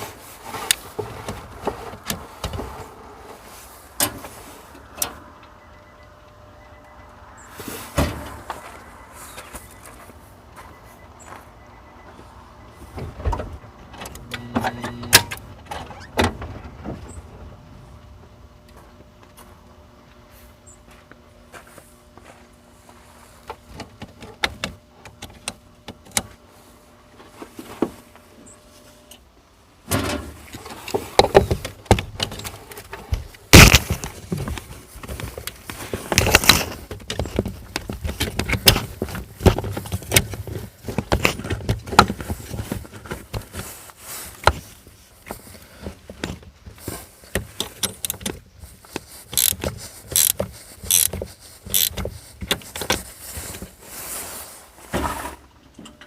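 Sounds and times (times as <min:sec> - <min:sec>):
handling clicks clinks and knocks: 0:44.4 - 0:53.1.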